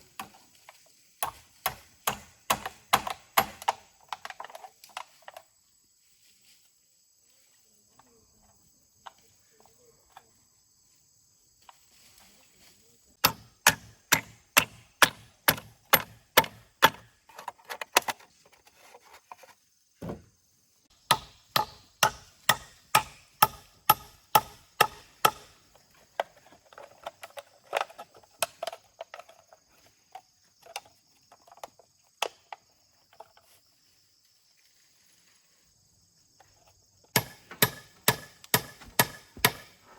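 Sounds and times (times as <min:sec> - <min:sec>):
wood chopped with a blade: 0:01.2 - 0:04.5, 0:13.2 - 0:18.2, 0:21.0 - 0:25.6, 0:37.1 - 0:39.8.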